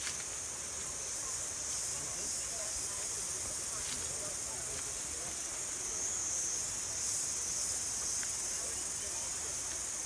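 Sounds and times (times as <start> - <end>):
insects droning: 0.0 - 10.0.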